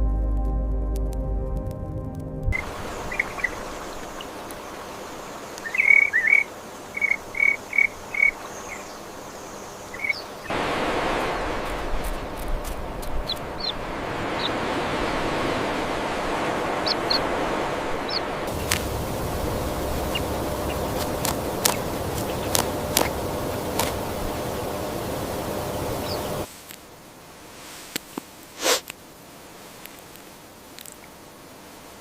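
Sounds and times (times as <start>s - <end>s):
steady outdoor hiss: 2.5s - 32.0s
bird chirps: 2.6s - 10.5s, 18.1s - 26.5s.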